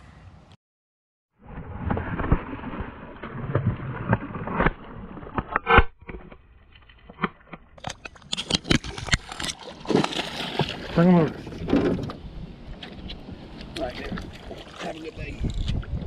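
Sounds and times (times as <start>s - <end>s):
knocking and scraping in boat: 5.2s - 16.0s.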